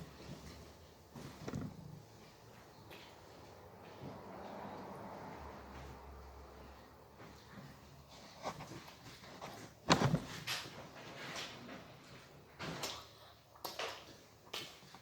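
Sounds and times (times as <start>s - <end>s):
objects knocking and clattering: 9.4s - 11.6s.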